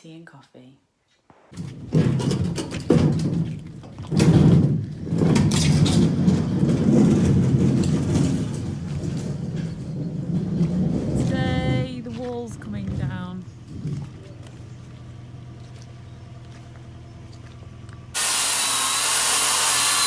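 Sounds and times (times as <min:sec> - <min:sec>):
clattering knocks: 0:01.5 - 0:14.2
digger engine under load: 0:03.4 - 0:20.0.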